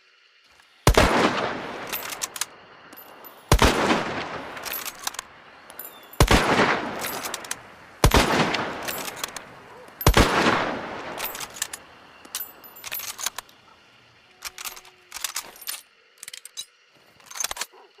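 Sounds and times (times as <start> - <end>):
rifle shots echoing: 0.9 - 13.4
rifle bolt clicks: 1.8 - 13.6.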